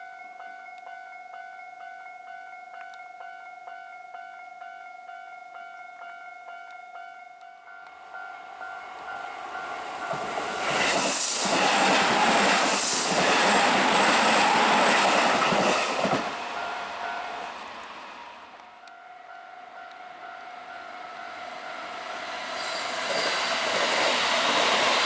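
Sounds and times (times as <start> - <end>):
electric train passing: 7.7 - 25.0.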